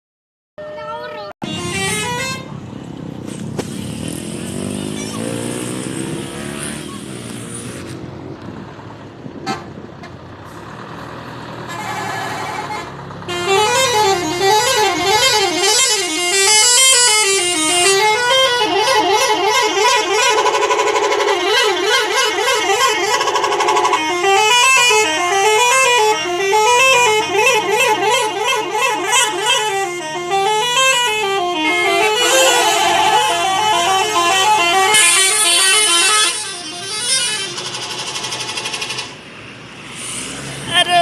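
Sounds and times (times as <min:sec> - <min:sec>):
multi-tone bus horn melodies: 0:00.6 - 0:02.7, 0:09.4 - 0:10.2, 0:11.6 - 0:38.2.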